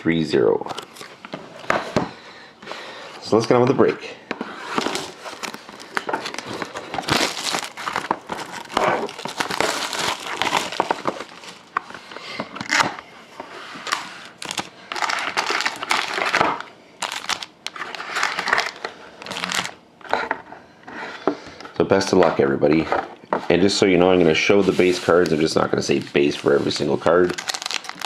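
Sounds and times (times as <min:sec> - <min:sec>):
plastic wrapping crinkling and tearing: 0:04.8 - 0:12.0, 0:13.8 - 0:19.8, 0:24.8 - 0:28.0.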